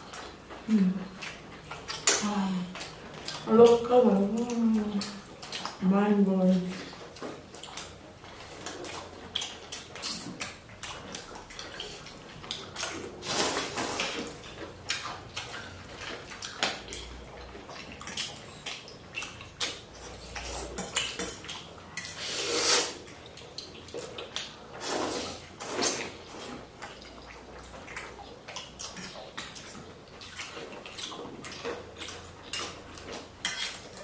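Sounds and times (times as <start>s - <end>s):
slurping noodles: 12.8s - 14.4s, 22.0s - 23.1s, 24.8s - 26.7s.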